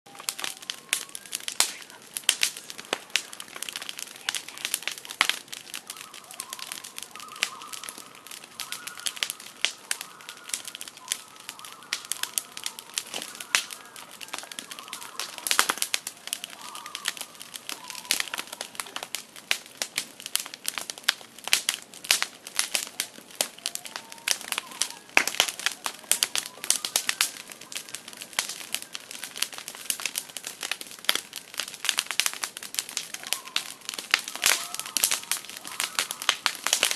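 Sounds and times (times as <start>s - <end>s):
loon calling faintly: 0.1s - 19.1s, 22.6s - 28.3s, 33.0s - 36.9s
campfire crackling and popping: 0.1s - 36.9s.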